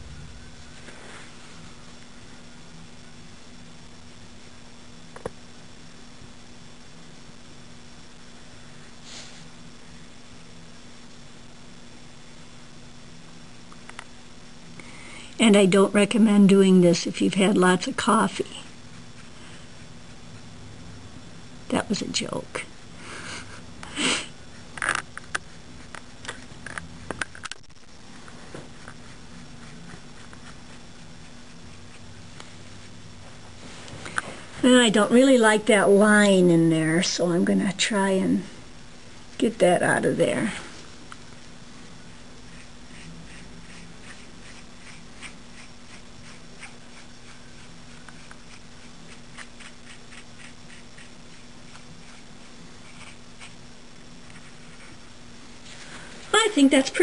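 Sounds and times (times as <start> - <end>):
steady low hum: 0.0 - 57.0
paintbrush strokes on canvas: 0.6 - 1.8, 28.2 - 34.8, 41.8 - 53.6.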